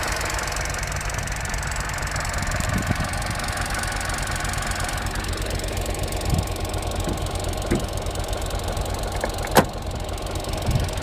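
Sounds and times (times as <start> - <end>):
car engine idling: 0.0 - 11.0
fuel injectors ticking: 3.4 - 11.0.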